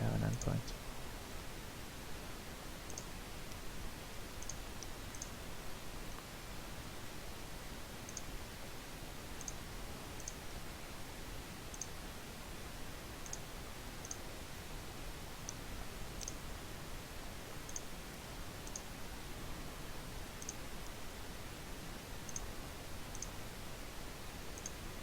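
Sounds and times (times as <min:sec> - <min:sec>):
faint microphone hiss: 0:00.0 - 0:25.0
computer mouse clicking: 0:02.9 - 0:03.6, 0:04.4 - 0:05.3, 0:08.1 - 0:08.3, 0:09.4 - 0:09.6, 0:10.2 - 0:10.4, 0:11.7 - 0:11.9, 0:13.2 - 0:14.2, 0:16.2 - 0:16.4, 0:17.7 - 0:17.9, 0:18.6 - 0:18.9, 0:20.4 - 0:20.6, 0:22.3 - 0:22.5, 0:23.1 - 0:23.3, 0:24.6 - 0:24.8.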